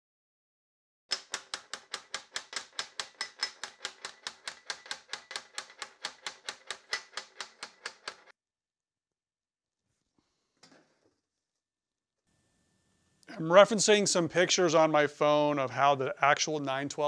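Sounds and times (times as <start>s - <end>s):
hammer tapping sheet metal: 1.1s - 8.3s.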